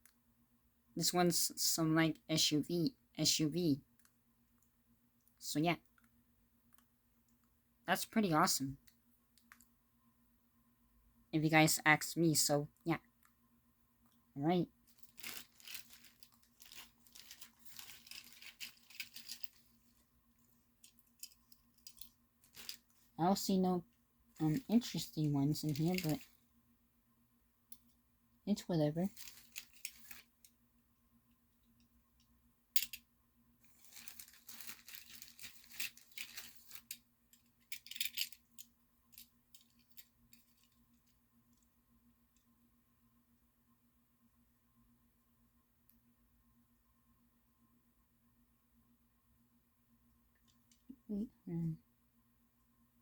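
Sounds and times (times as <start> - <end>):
plastic bag crinkling: 14.8 - 23.6, 24.3 - 26.4, 29.0 - 30.5, 33.6 - 41.2
toy cars rustling and clicking: 14.9 - 23.1, 24.4 - 26.4, 29.1 - 30.6, 32.8 - 33.0, 33.7 - 41.7
toy cars clicking: 15.2 - 19.6, 35.4 - 40.7.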